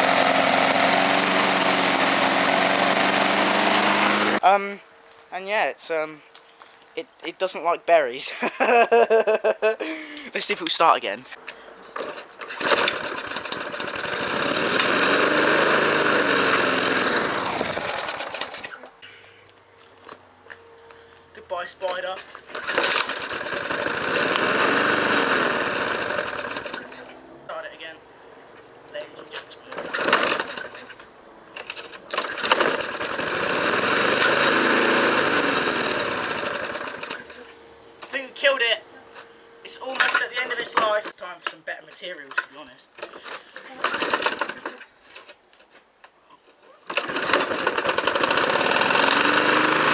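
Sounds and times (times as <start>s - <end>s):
lawnmower engine sputtering: 0.0s - 4.5s, 11.8s - 19.0s, 21.6s - 27.2s, 28.9s - 41.6s, 42.4s - 45.3s, 46.8s - 49.9s.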